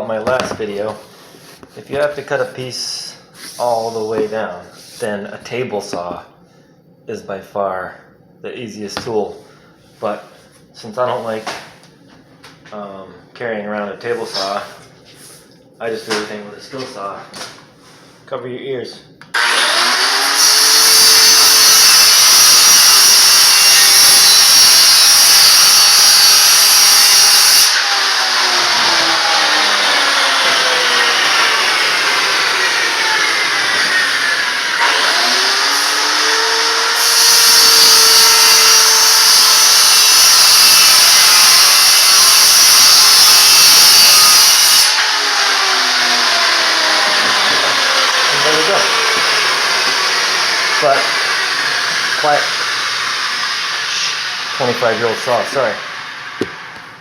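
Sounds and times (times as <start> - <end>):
circular saw cutting board: 19.4 - 57.0.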